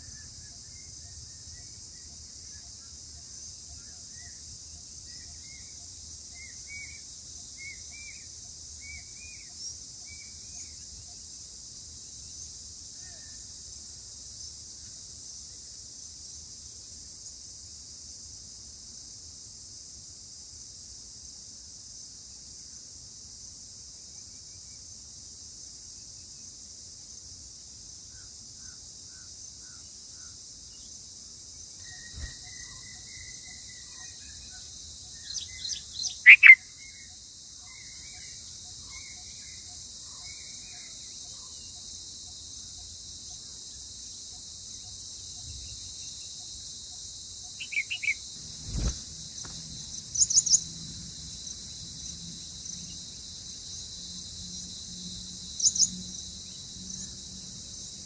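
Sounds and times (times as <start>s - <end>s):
insects buzzing: 0.0s - 58.0s
bird chirping: 35.2s - 36.6s, 47.5s - 50.7s, 55.6s - 56.6s.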